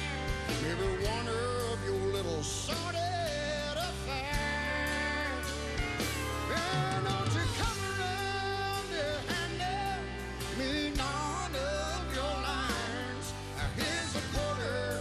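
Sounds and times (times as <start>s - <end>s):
country band playing: 0.0s - 15.0s.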